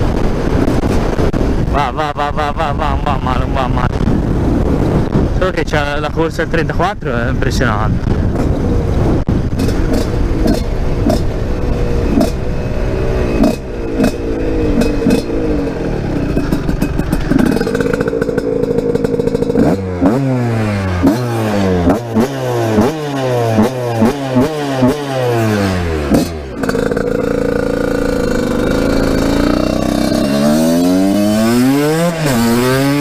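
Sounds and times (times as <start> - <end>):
wind on microphone: 0.0 - 24.1
motorcycle engine revving: 8.2 - 33.0.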